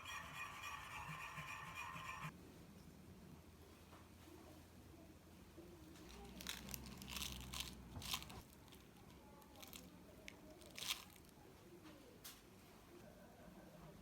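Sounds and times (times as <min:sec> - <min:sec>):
crinkling crunching handling: 0:05.9 - 0:11.4.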